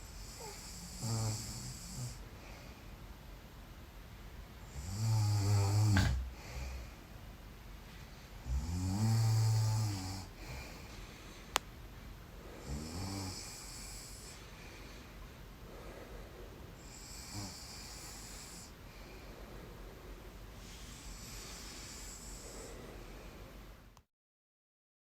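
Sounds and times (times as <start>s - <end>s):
person snoring: 0.2s - 2.2s, 4.7s - 6.7s, 8.4s - 10.8s, 12.5s - 14.4s, 16.8s - 18.8s, 20.9s - 22.9s.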